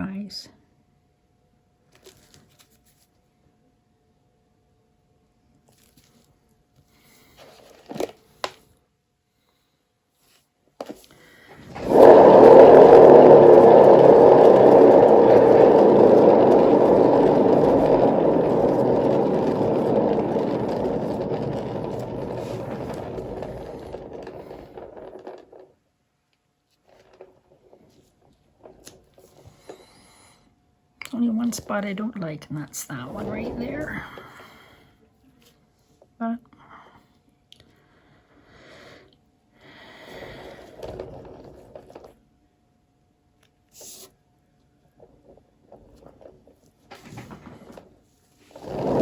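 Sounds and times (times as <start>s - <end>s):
turntable spinning with rattling whir: 11.5s - 25.8s, 26.8s - 29.8s, 31.1s - 34.5s, 40.1s - 42.2s, 44.9s - 49.0s.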